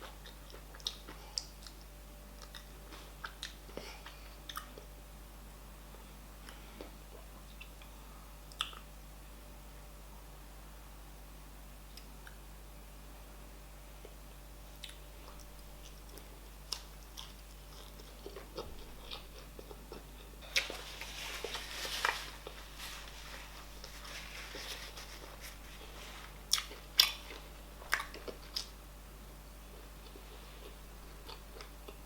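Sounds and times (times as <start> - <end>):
chewing: 0.0 - 4.9, 14.8 - 28.7, 29.7 - 32.0
wet mouth clicks: 8.5 - 8.8.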